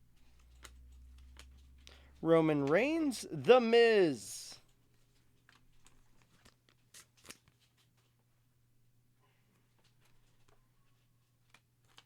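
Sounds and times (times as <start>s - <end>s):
trading cards clicking and rustling: 0.2s - 4.0s, 5.4s - 8.1s.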